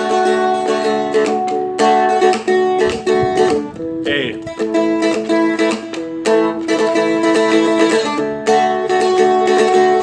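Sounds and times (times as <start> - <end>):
dulcimer strummed and picked: 0.0 - 10.0.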